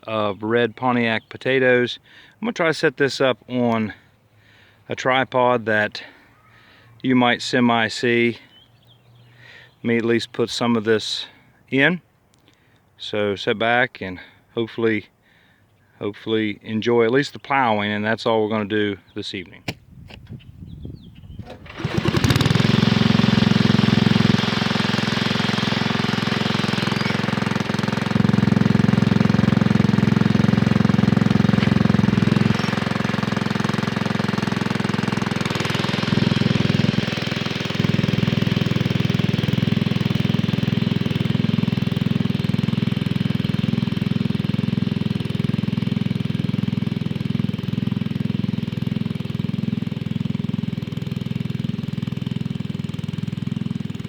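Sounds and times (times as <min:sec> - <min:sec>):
tractor engine running hard: 0:21.2 - 0:54.0.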